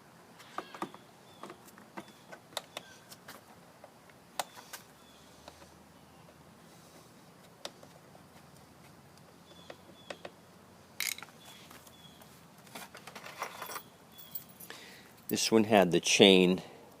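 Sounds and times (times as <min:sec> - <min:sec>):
scraping rustle: 0:11.3 - 0:14.5.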